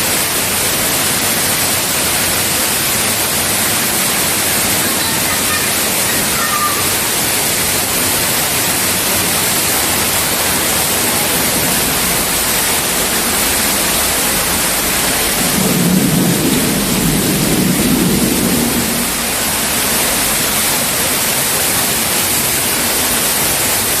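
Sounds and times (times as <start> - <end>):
waterfall rushing: 0.0 - 24.0
low rumble: 8.3 - 21.5.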